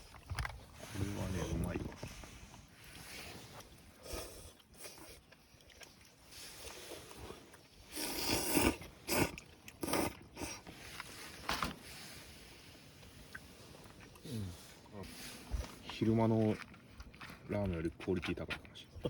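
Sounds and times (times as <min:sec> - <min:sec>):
person slurping noodles: 0:06.5 - 0:11.2.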